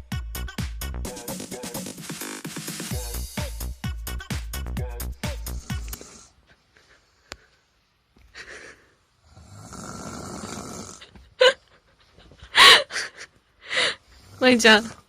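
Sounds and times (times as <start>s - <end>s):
woman snoring: 5.6s - 6.4s, 9.2s - 11.2s.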